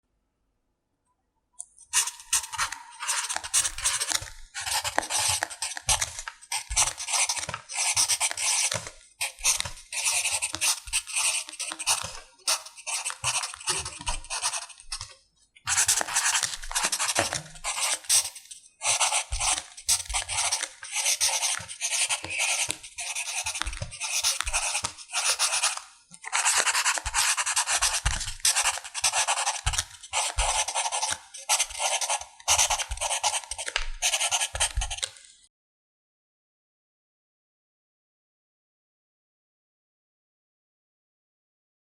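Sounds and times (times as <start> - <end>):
pencil writing on paper: 1.9 - 35.2.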